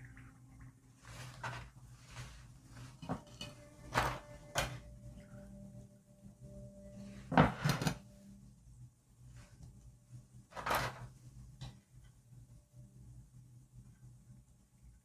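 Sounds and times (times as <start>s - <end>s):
dishes and utensils clinking: 2.8s - 4.8s.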